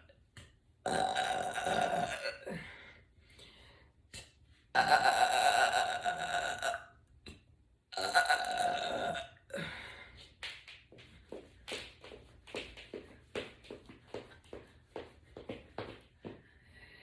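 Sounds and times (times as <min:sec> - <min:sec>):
woman burping: 0:00.8 - 0:02.6, 0:04.8 - 0:07.0, 0:07.9 - 0:09.7.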